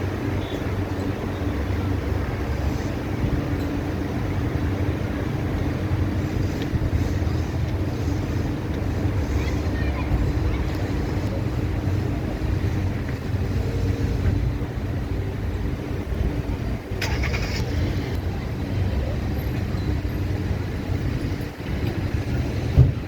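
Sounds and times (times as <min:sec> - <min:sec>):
short thump: 0:22.8 - 0:23.0.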